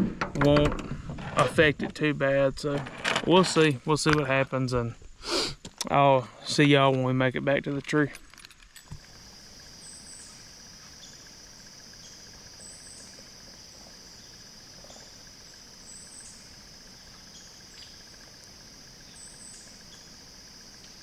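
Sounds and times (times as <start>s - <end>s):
insect chorus drone: 8.8s - 21.0s.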